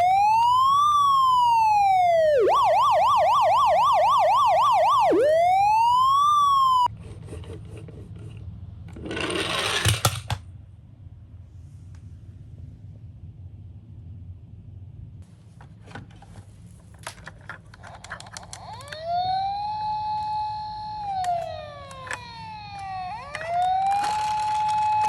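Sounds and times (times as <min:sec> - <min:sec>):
toy car electronic siren: 0:00.0 - 0:06.9, 0:18.4 - 0:25.0.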